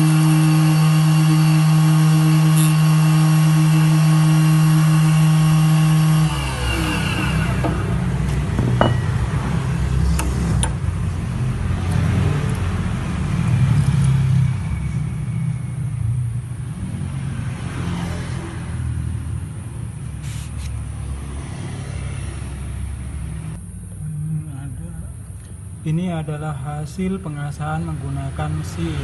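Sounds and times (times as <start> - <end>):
motor hum: 0.0 - 12.7.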